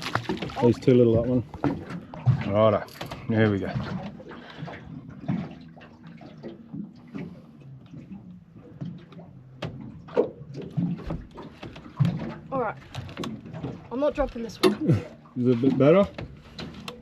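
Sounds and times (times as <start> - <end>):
water sloshing and splashing: 0.0 - 17.0.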